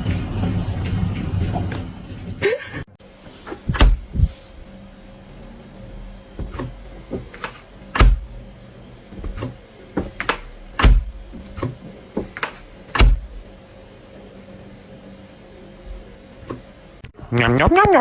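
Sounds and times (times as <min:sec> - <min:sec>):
irregular knocks and thumps: 0:09.1 - 0:13.5.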